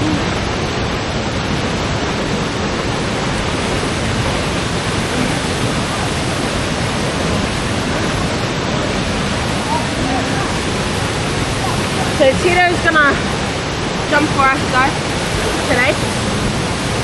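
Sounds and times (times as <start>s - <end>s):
waterfall rushing into pool: 0.0s - 17.0s.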